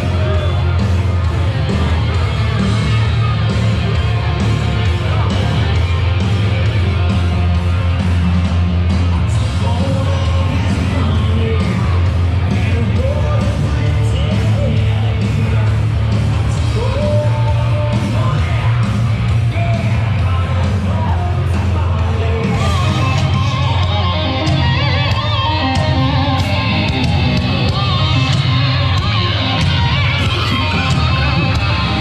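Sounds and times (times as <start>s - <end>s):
electric guitar: 0.0s - 32.0s
person singing: 9.3s - 32.0s.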